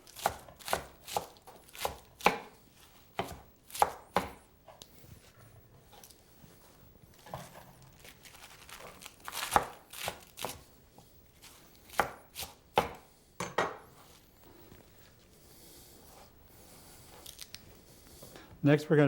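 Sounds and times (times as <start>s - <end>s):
knife chopping lettuce on board: 0.1s - 4.4s, 9.3s - 10.6s, 11.4s - 13.0s.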